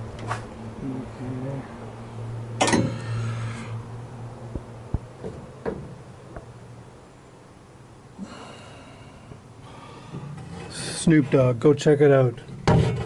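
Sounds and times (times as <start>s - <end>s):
soft exhale: 8.2s - 10.4s.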